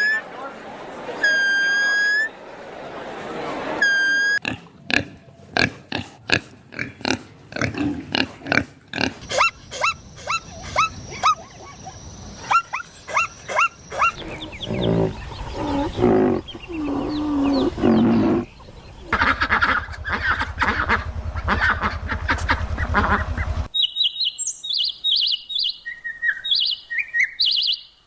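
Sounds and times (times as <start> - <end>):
lower longer animal calls: 9.2 - 23.7
high chirping calls: 9.2 - 28.0.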